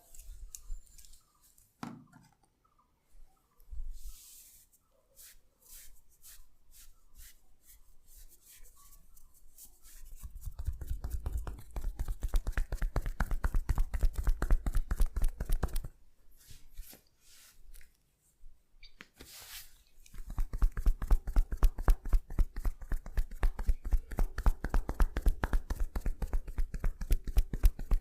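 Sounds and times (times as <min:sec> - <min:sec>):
hands tapping on body: 0:10.6 - 0:15.9, 0:20.1 - 0:28.0.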